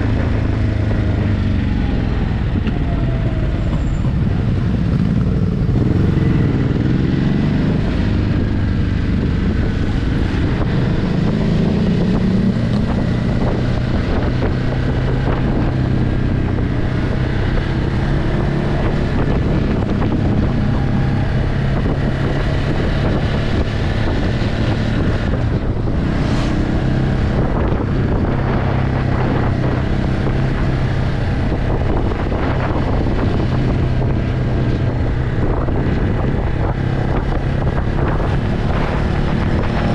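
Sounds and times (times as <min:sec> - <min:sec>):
motorcycle engine revving: 0:00.0 - 0:39.9
wind noise on microphone: 0:00.0 - 0:39.9.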